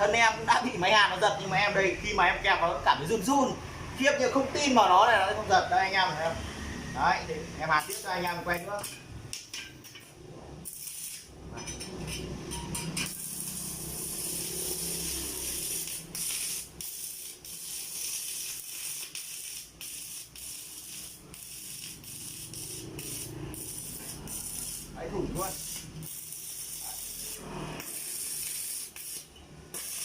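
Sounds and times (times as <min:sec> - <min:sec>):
welding arc crackling hiss: 0:07.7 - 0:10.0, 0:10.6 - 0:11.4, 0:12.1 - 0:30.0.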